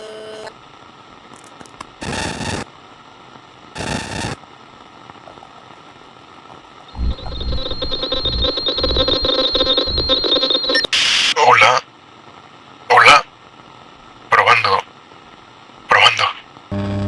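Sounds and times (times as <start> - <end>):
steady whine: 6.9 - 11.4
walkie-talkie static: 6.9 - 11.9, 12.9 - 13.3, 14.3 - 15.0, 15.8 - 16.7.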